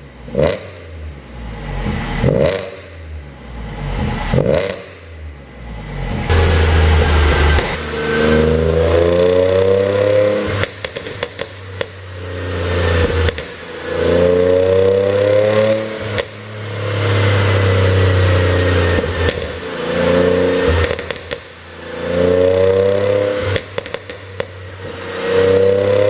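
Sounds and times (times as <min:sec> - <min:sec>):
car engine revving: 0:00.0 - 0:26.0
exhaust pops and crackles: 0:10.6 - 0:12.0, 0:13.0 - 0:13.6, 0:16.1 - 0:16.4, 0:19.0 - 0:19.7, 0:20.7 - 0:21.6, 0:23.5 - 0:24.8.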